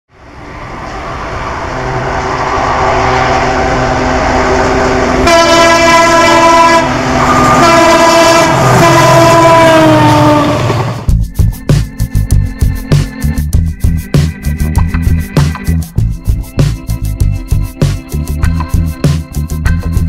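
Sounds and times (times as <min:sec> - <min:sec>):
train running: 0:00.1 - 0:20.0
locomotive horn blasts: 0:02.5 - 0:10.9.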